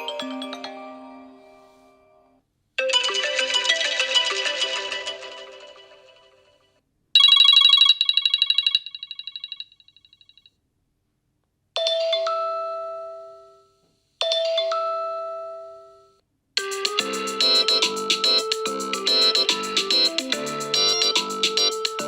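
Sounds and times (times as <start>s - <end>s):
rapid high trill ringtone: 2.8s - 6.4s, 7.2s - 9.7s, 16.6s - 22.0s.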